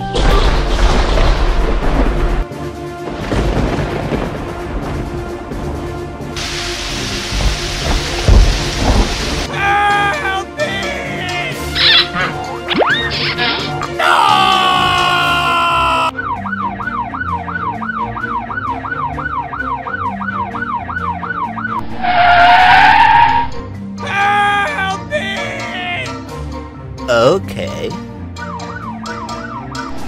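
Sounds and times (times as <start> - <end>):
background music: 0.0 - 30.0
rain and thunder: 0.6 - 9.5
tyre screech skid effect: 21.8 - 23.6.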